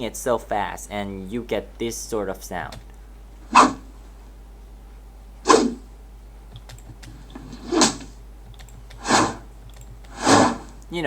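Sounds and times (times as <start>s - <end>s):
stick whooshing through air: 3.5s - 3.9s, 5.5s - 5.8s, 7.5s - 8.1s, 9.0s - 9.5s, 10.1s - 10.8s.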